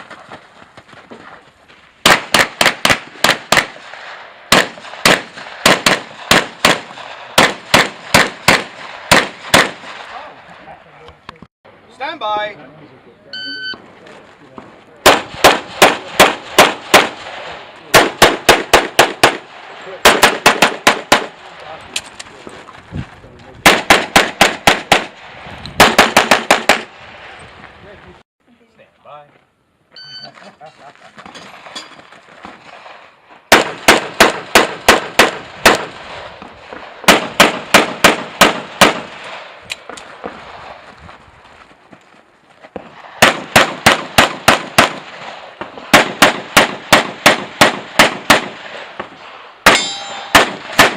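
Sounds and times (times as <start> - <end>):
pistol shots: 2.0 - 10.2, 15.0 - 21.5, 23.6 - 27.0, 32.6 - 40.4, 42.8 - 50.9.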